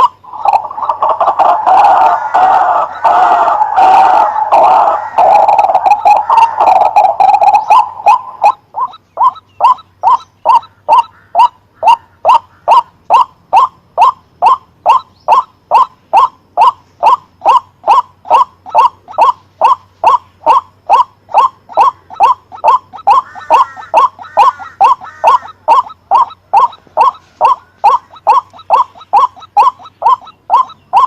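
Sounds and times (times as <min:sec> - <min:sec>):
waterhen calling: 0:00.0 - 0:31.0.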